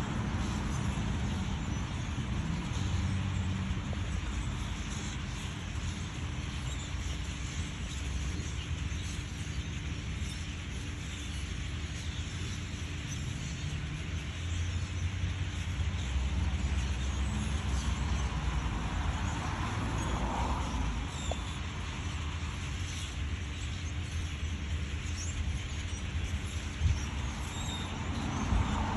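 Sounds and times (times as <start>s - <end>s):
flock of birds calling: 0.0s - 28.9s
road traffic rumble: 0.0s - 28.9s.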